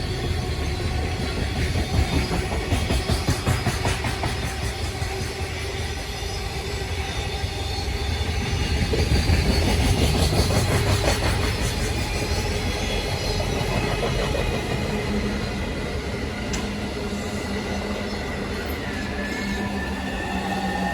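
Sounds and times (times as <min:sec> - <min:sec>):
low rumble of train: 0:00.0 - 0:20.9.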